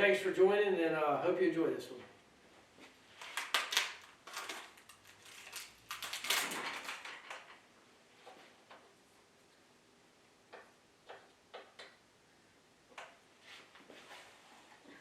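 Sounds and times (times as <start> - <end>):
objects knocking and rattling: 3.2 - 7.7.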